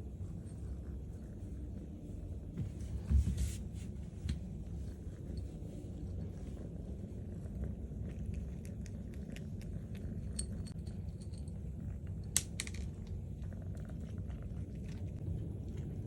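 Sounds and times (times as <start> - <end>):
kitten purring: 4.3 - 12.3, 13.0 - 16.0.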